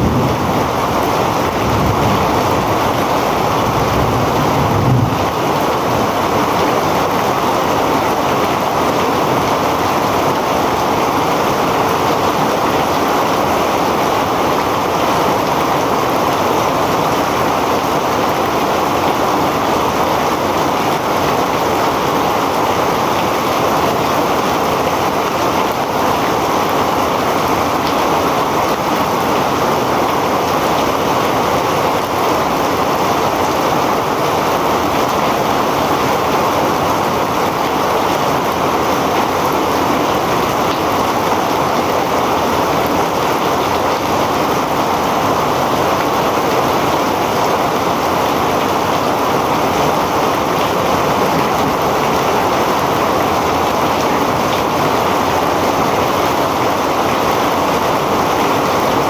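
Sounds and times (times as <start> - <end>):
heavy rain falling: 0.0 - 59.0.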